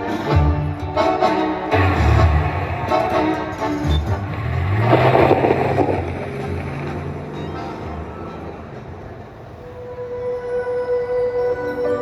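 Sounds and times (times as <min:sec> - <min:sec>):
instrumental music with bass: 0:00.0 - 0:08.5.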